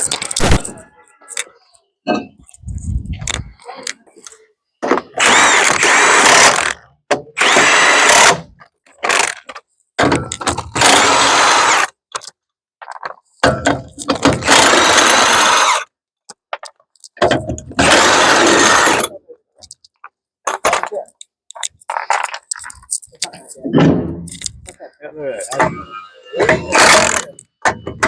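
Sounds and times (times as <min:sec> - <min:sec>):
power tool motor whine: 0:07.4 - 0:08.4, 0:10.8 - 0:11.8, 0:14.4 - 0:15.8, 0:17.8 - 0:19.0.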